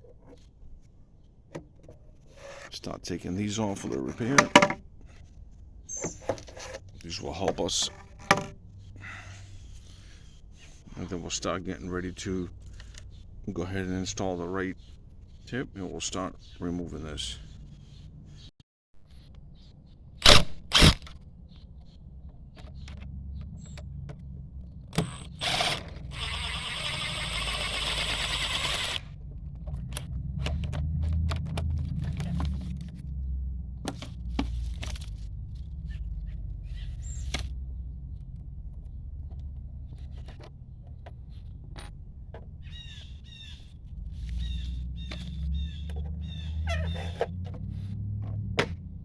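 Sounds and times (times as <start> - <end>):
clicks and knocks of hardware: 4.4 - 4.8
low steady rumble: 19.1 - 49.0
bird chirping: 35.8 - 37.3, 42.6 - 47.2.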